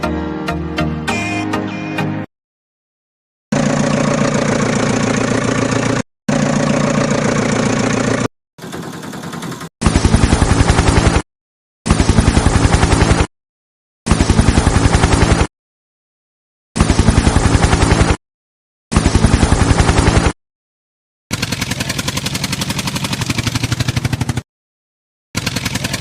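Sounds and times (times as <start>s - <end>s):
engine rapid chugging pulses: 3.5s - 11.2s, 21.3s - 24.4s, 25.4s - 26.0s
motor drone: 3.5s - 11.2s, 25.4s - 26.0s.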